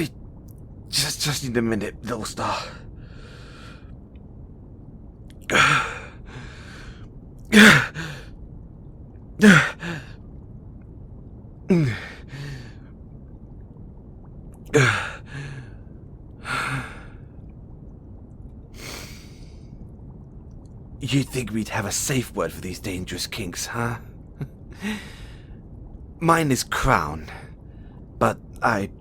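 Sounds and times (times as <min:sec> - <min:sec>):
man groaning: 0:09.4 - 0:09.8.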